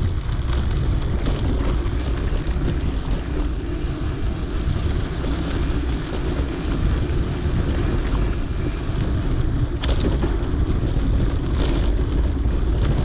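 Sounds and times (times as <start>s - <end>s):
bike tyre rumble: 0.0s - 13.0s
wind on microphone: 0.0s - 13.0s
sharp click or rattle: 9.8s - 10.2s.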